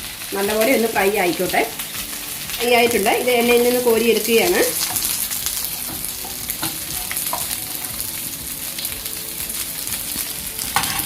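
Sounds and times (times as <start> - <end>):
chicken sizzling in hot oil: 0.0 - 11.0.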